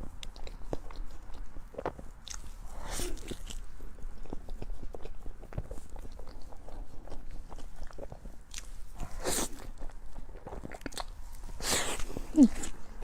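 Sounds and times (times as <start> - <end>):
person biting and chewing food: 0.0 - 13.0.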